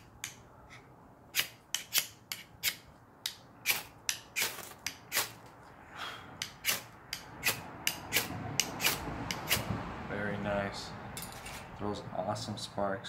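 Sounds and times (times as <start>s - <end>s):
striker scraping fire steel: 0.0s - 5.7s, 6.4s - 9.7s.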